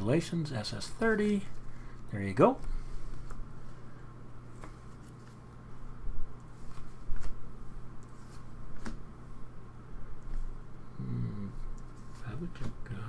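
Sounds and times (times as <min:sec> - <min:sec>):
steady low hum: 0:00.0 - 0:13.0
cards flipped by hand: 0:04.5 - 0:05.4, 0:06.4 - 0:07.4, 0:08.0 - 0:09.0.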